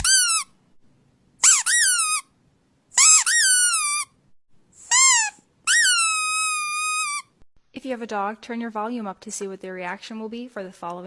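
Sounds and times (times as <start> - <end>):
squeaky toy squeaking: 0.0 - 0.6, 1.4 - 2.3, 2.9 - 4.2, 4.8 - 7.4.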